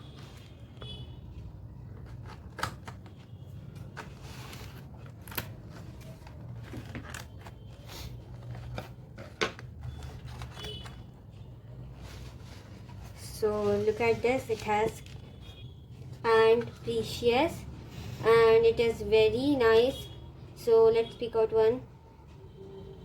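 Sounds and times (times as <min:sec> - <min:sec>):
packaging clicks and scrapes: 0:01.8 - 0:11.1.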